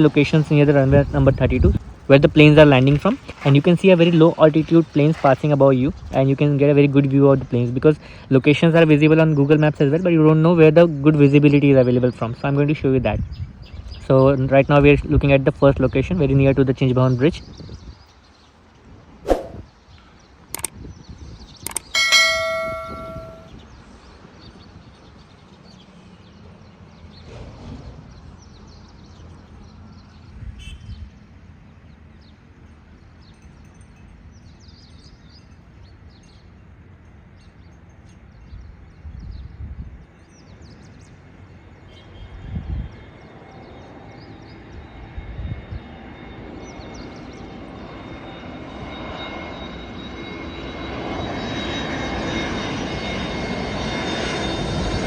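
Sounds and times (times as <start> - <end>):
outdoor background noise: 0.0 - 55.0
sharp clicks: 20.5 - 20.8, 21.6 - 21.9
metallic ding: 21.9 - 23.5
airliner jet engine whine: 41.2 - 55.0.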